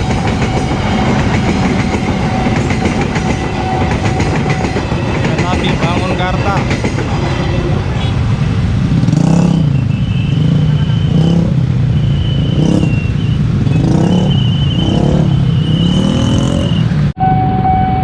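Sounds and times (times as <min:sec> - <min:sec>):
high-pitched warning tone: 0:00.0 - 0:06.7, 0:13.8 - 0:18.0
vehicle engines revving past: 0:08.1 - 0:17.2.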